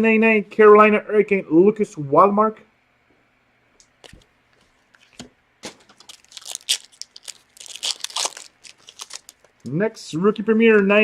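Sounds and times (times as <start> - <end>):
foil wrapper tearing and crinkling: 5.6 - 9.7.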